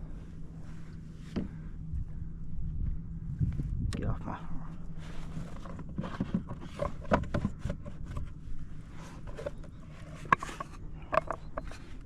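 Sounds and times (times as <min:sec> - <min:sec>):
knocks and scrapes of fish handling: 0:05.1 - 0:12.0.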